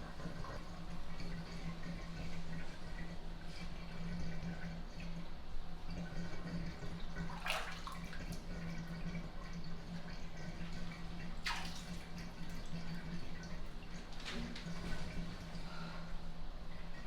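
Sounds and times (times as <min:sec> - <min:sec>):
water drips and crackles: 0:00.0 - 0:15.8
water splash: 0:07.3 - 0:08.3, 0:11.4 - 0:12.1.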